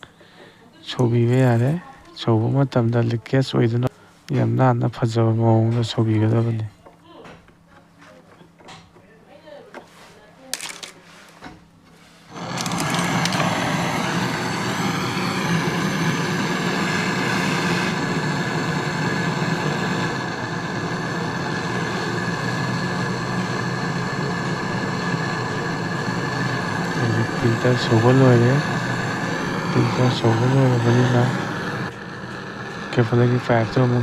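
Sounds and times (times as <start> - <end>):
torch flame burning: 12.2 - 34.0.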